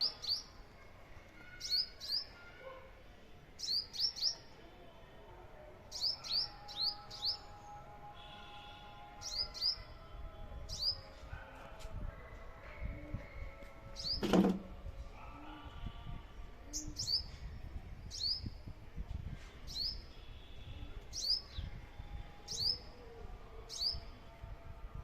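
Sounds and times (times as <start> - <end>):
sparrow chirping: 3.6 - 4.5.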